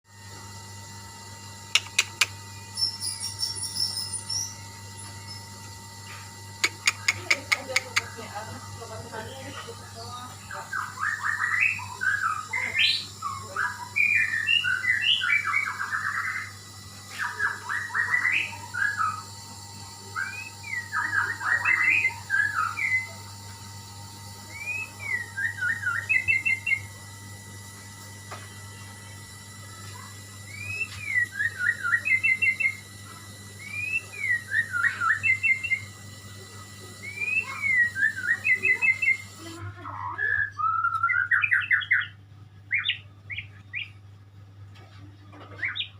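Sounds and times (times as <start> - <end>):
steady low hum: 0.1 - 45.9
bird singing whistled phrases: 2.7 - 4.6, 10.2 - 16.5, 20.2 - 23.2, 24.5 - 26.9, 30.5 - 32.8, 33.6 - 35.9, 37.0 - 39.3, 40.0 - 44.0.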